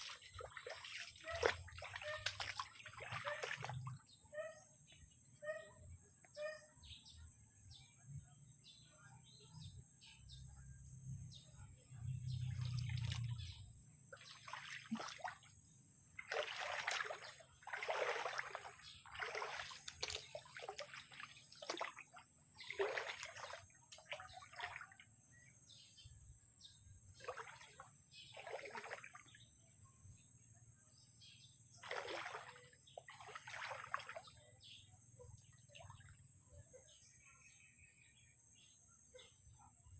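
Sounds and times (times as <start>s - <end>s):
water splashing and sloshing: 0.0s - 4.2s, 12.2s - 25.5s, 27.0s - 29.6s, 31.8s - 34.6s.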